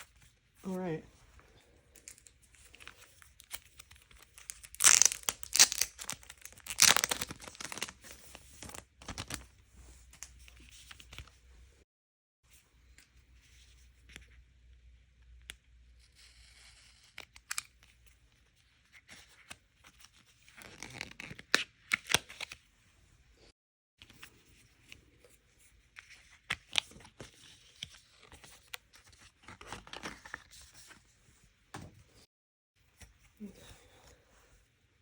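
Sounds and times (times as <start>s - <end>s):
packaging tearing and rustling: 2.1s - 9.4s.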